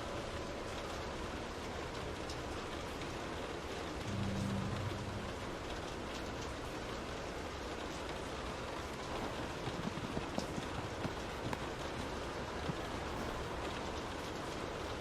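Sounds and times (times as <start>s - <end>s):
rain on a window: 0.0s - 15.0s
low hum: 4.0s - 6.4s.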